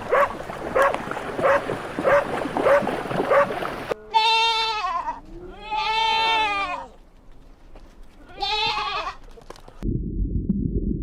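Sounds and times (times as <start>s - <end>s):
dog barking: 0.1s - 3.6s
animal bleating: 4.0s - 7.0s, 8.2s - 9.2s.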